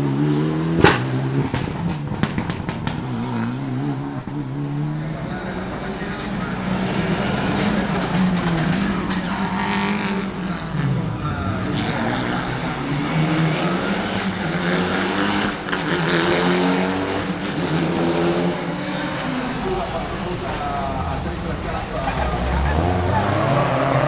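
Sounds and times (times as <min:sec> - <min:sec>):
rally car engine at high revs: 0:00.0 - 0:24.0.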